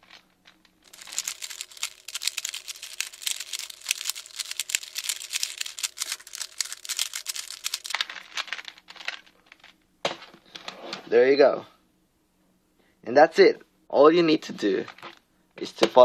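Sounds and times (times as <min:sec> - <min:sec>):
puzzle cube plastic clicks: 0:00.9 - 0:09.2.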